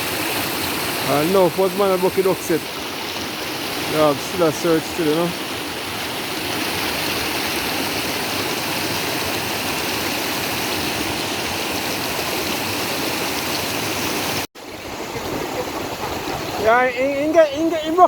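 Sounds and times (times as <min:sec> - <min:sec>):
river water rushing: 0:00.0 - 0:18.0.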